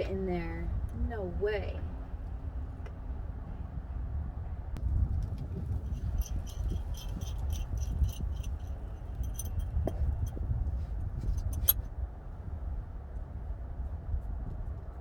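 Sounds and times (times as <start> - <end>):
steady low rumble: 0.0 - 15.0
metal hand tools clinking: 5.9 - 10.4, 11.3 - 11.8.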